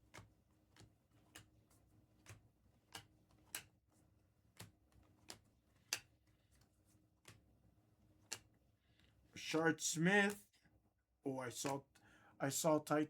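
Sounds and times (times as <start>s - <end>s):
trading cards flipped clicking: 0.0s - 1.5s, 2.2s - 3.8s, 4.5s - 7.5s, 8.2s - 8.5s.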